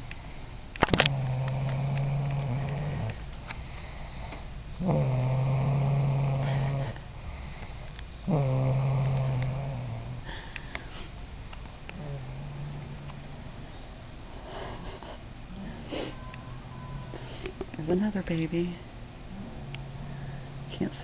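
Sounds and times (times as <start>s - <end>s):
person snoring: 1.0s - 3.2s, 3.9s - 7.5s, 8.2s - 10.5s, 12.0s - 13.1s.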